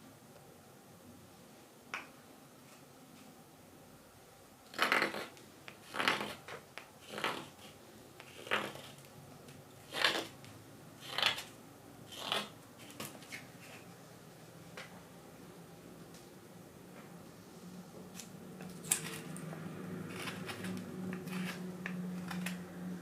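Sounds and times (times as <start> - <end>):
hook knife scraping wood: 4.7 - 9.1, 9.9 - 10.4, 11.0 - 11.5, 12.1 - 13.1, 20.1 - 22.6.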